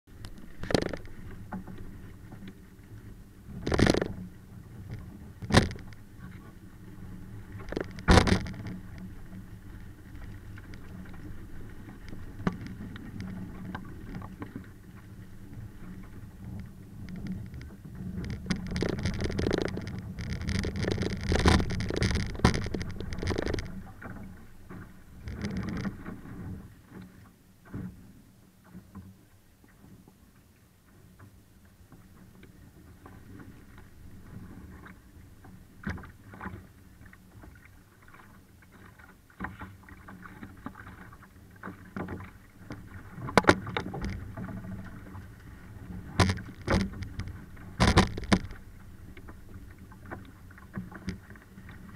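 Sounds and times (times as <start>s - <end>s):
hull knocks: 46.1s - 48.6s.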